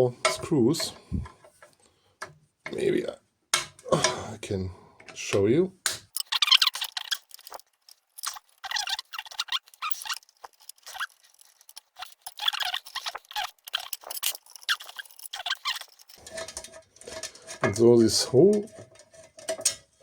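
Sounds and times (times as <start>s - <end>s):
screwdriver scratching metal screws: 6.2s - 16.2s.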